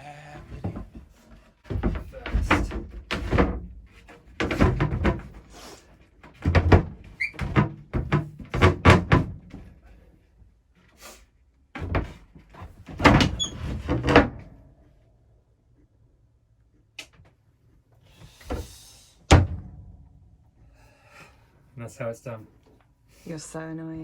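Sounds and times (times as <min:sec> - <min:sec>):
knocks and thuds of a part: 0:00.5 - 0:05.5, 0:06.2 - 0:09.8, 0:11.8 - 0:14.6, 0:19.3 - 0:20.3.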